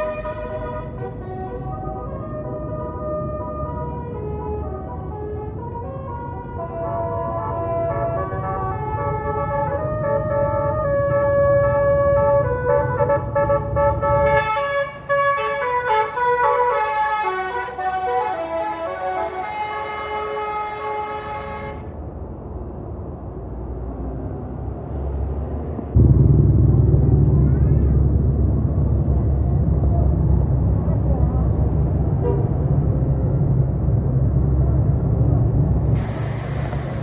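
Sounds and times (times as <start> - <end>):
musical air horn playing tune: 0.0 - 2.1, 7.4 - 21.9
bus engine rumble: 0.0 - 37.0.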